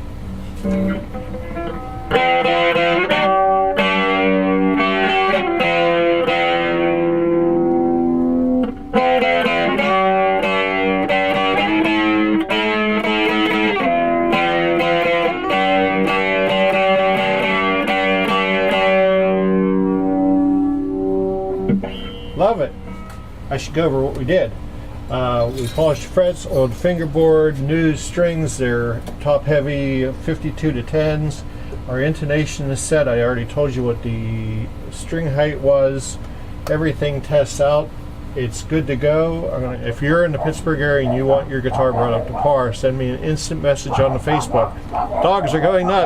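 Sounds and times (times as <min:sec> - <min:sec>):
overdriven electric guitar chords: 0:00.0 - 0:23.6, 0:40.1 - 0:46.0.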